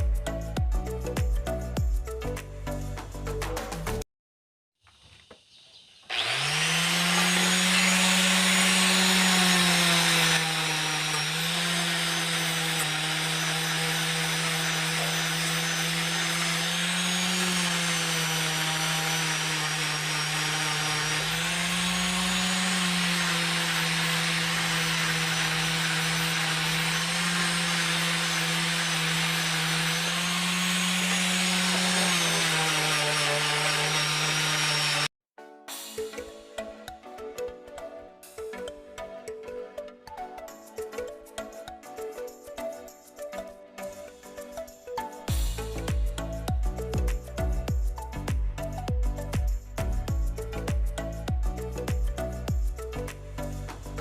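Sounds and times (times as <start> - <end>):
power tool motor whining: 6.0 - 35.1.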